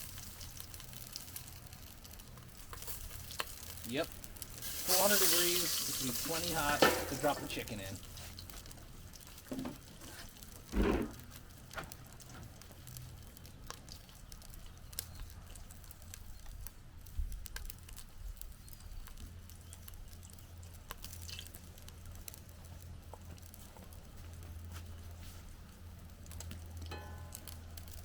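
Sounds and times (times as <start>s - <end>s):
grease popping and crackling: 0.0s - 28.0s
soft thuds: 10.7s - 11.2s.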